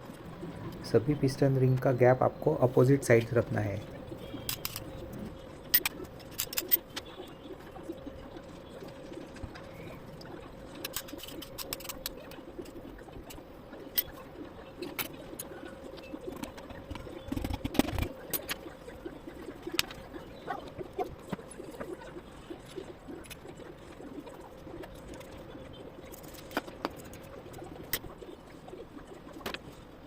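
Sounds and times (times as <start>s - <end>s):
faint steady hum: 0.0s - 30.0s
pigeons cooing: 0.2s - 5.3s.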